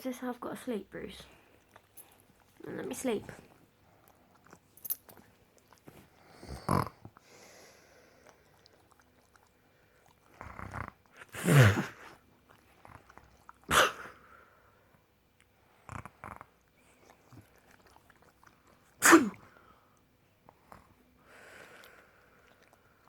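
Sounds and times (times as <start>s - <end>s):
person mock sneezing: 11.4s - 12.0s, 13.7s - 14.2s, 19.0s - 19.4s.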